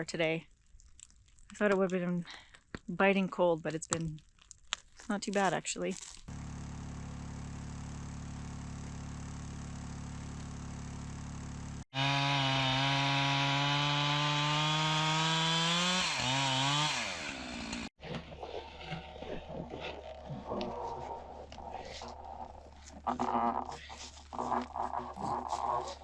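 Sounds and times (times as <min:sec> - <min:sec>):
low engine hum: 0:06.3 - 0:11.8
chainsaw running at high revs: 0:06.3 - 0:17.9
knocks and scrapes: 0:18.0 - 0:26.0.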